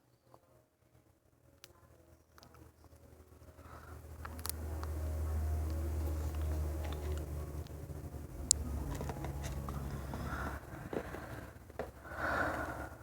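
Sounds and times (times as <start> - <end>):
low rumble: 4.0 - 13.0.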